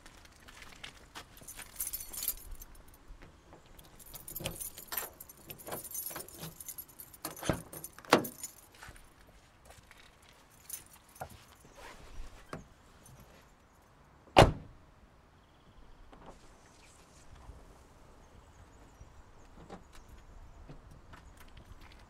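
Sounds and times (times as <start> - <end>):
car keys jangling: 1.4 - 3.0, 3.8 - 9.0, 9.9 - 11.6
car door thunk: 14.4 - 14.7.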